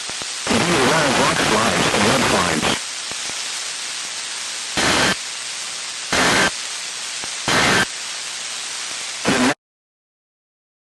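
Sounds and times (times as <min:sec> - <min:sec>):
radio static hiss: 0:00.0 - 0:09.6
digital data tone bursts: 0:04.8 - 0:05.2, 0:06.1 - 0:06.6, 0:07.5 - 0:07.9.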